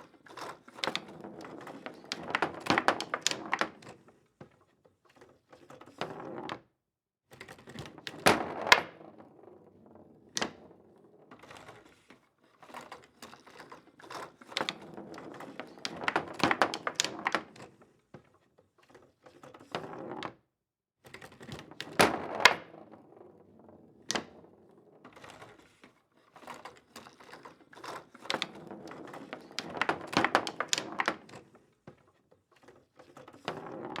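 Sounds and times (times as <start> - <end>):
foosball rods rattling: 0.4 - 3.9, 14.3 - 17.6, 26.8 - 31.5
foosball ball clacks: 0.8 - 3.9, 14.6 - 17.6, 28.2 - 31.4.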